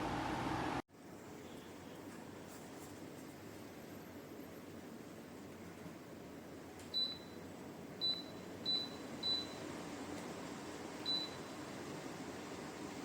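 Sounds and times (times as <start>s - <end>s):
fan airflow hiss: 0.0s - 13.0s.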